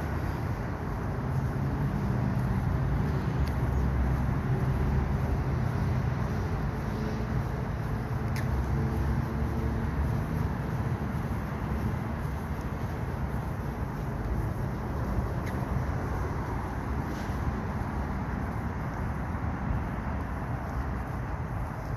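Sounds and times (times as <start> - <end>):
road traffic rumble: 0.0 - 21.9
vehicle engine low hum: 0.0 - 21.9
faint clicks: 8.3 - 8.7.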